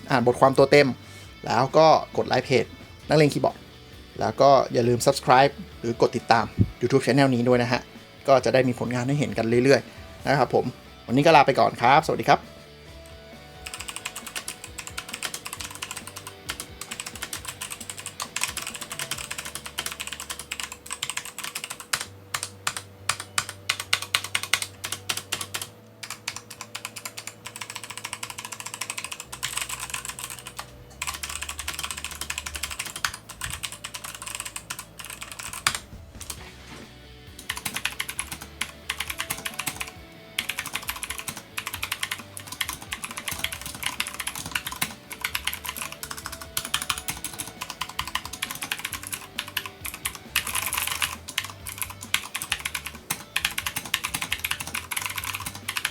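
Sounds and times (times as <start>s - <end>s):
faint background music: 0.0s - 55.9s
typing on mechanical keyboard: 13.6s - 36.4s, 37.4s - 55.9s.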